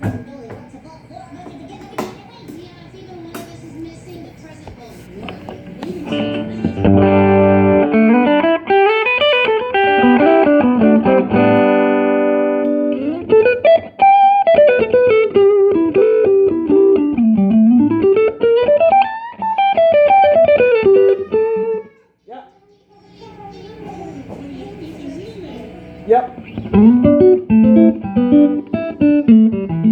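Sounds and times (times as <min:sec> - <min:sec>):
electric guitar playing: 0:05.1 - 0:22.0, 0:23.2 - 0:29.9.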